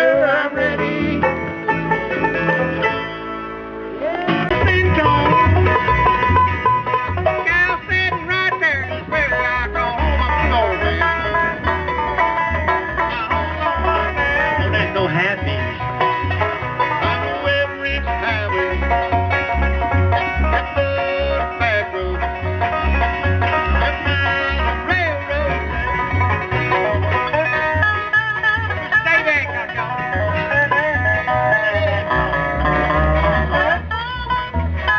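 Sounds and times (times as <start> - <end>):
banjo picking: 0.0 - 34.9
guitar: 0.0 - 34.9
steady bass line: 0.0 - 34.9.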